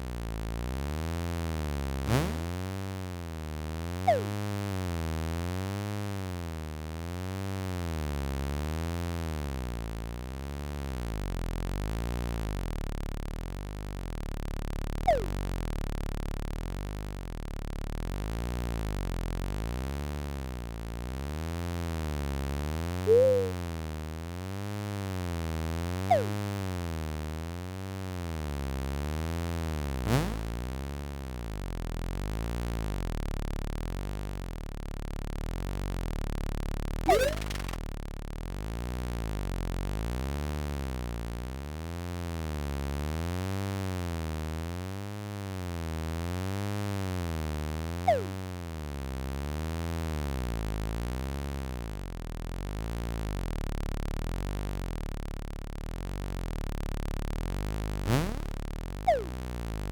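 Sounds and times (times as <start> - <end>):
wavering electronic buzzing drone: 1.7 - 2.8, 3.8 - 5.2, 15.0 - 15.7, 22.9 - 24.0, 25.9 - 27.0, 37.1 - 37.8, 47.8 - 49.5, 57.6 - 59.9
zipping pitch-sweep effects: 4.1 - 4.4, 15.0 - 15.4, 23.1 - 23.7, 26.1 - 26.5, 30.1 - 30.6, 37.1 - 37.8, 48.0 - 48.5, 58.0 - 59.6.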